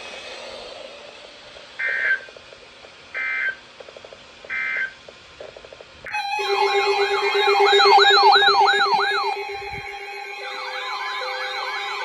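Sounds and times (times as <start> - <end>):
electronic alert tone: 6.1 - 12.0
harsh digital tone bursts: 6.1 - 12.0
wailing siren-like sweep: 6.1 - 12.0.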